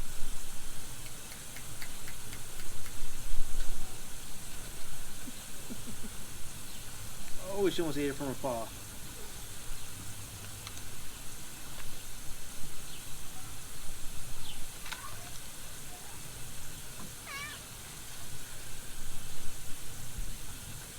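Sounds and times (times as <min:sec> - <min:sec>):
cat meowing: 0:17.2 - 0:17.8.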